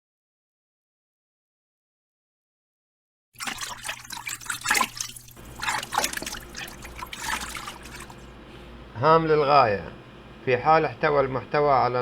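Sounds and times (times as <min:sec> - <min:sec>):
liquid trickling and dripping: 0:03.4 - 0:08.3.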